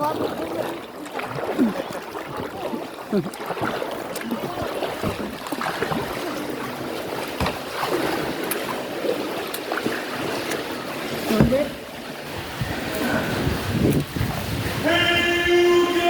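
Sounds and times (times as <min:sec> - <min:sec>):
river water rushing: 0:00.0 - 0:16.0
knock on kayak: 0:07.3 - 0:08.0, 0:11.2 - 0:11.9.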